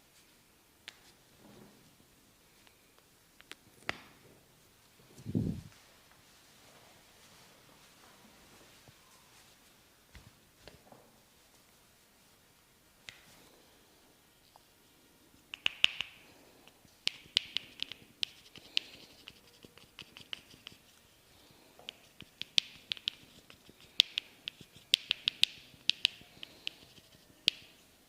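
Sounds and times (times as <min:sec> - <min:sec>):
fingers snapping clicks in massage: 0:15.5 - 0:20.8, 0:21.8 - 0:27.7.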